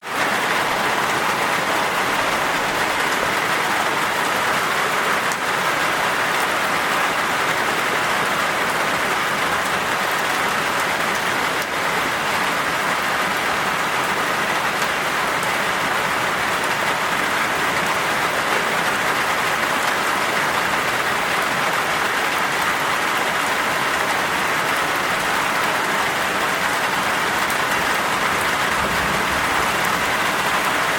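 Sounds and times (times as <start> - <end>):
steady rain falling: 0.0 - 30.9.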